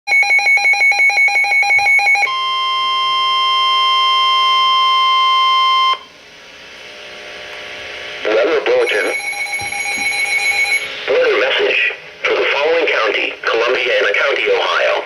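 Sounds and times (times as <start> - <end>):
rapid electronic alert beeping: 0.1 - 2.3, 8.8 - 11.0
steady warning alarm tone: 0.1 - 6.1, 8.8 - 11.6
radio hiss: 8.2 - 9.1, 10.9 - 15.0.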